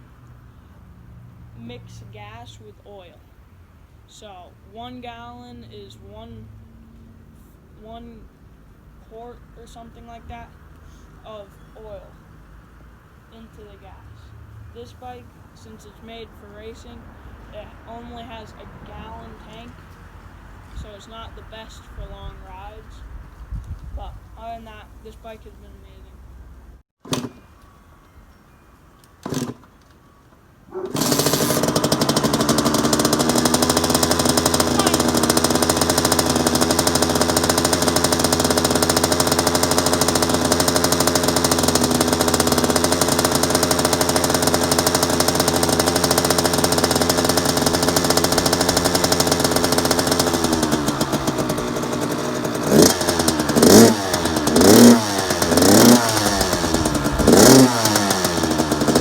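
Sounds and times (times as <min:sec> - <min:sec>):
dirt bike engine starting and idling: 0:00.0 - 0:27.6, 0:29.2 - 0:30.0, 0:30.7 - 0:59.0
engine throttle blips: 0:00.0 - 0:59.0.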